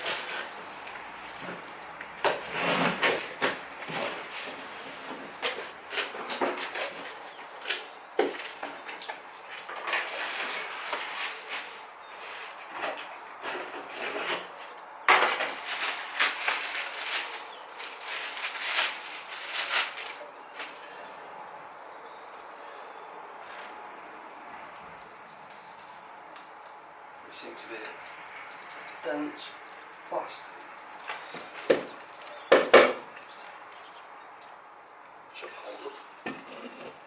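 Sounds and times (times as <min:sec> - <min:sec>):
parts and packaging handled: 0:00.0 - 0:20.8.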